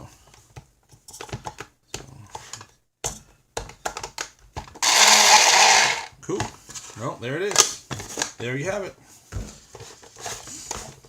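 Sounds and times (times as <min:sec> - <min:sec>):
kitchen chopper motor running: 0:04.8 - 0:06.1.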